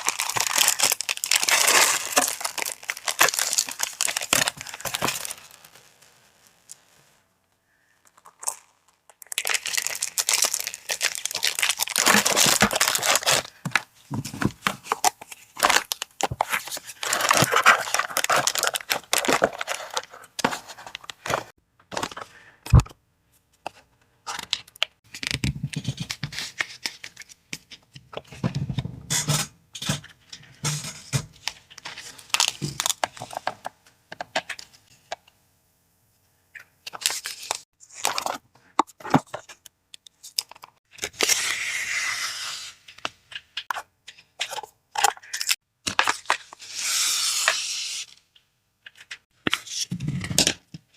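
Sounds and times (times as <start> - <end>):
paper tearing and crinkling: 0.0 - 5.9, 9.4 - 13.6, 15.6 - 21.4.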